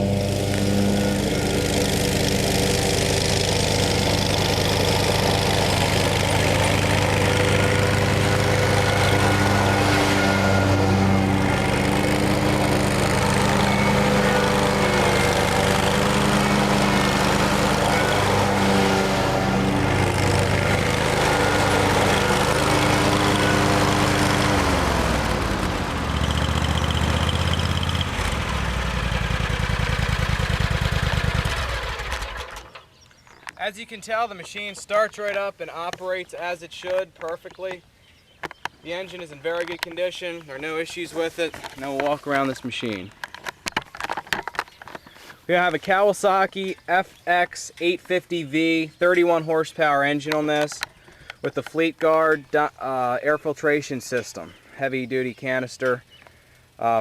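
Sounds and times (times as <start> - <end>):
mower engine running: 0.0 - 33.1.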